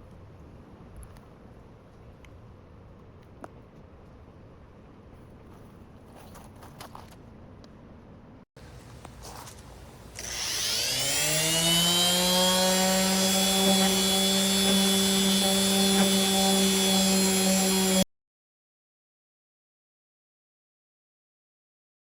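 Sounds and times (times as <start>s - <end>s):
electric sander motor: 10.2s - 18.0s.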